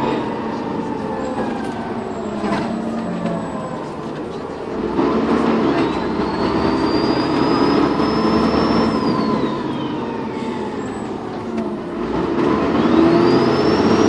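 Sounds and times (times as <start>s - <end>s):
bus engine pulling hard: 0.0s - 14.0s
turbocharger whistle: 5.6s - 11.1s, 12.6s - 14.0s.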